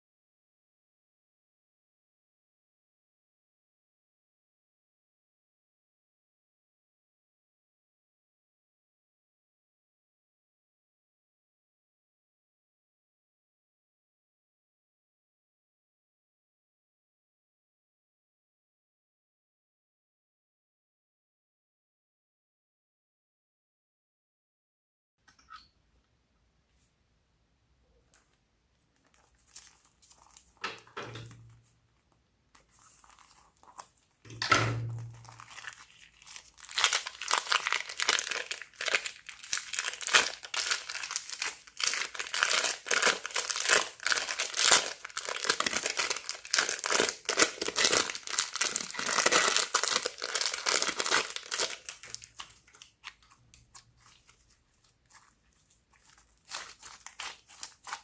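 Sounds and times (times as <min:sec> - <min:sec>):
slime crackling and popping: 0:34.9 - 0:58.0.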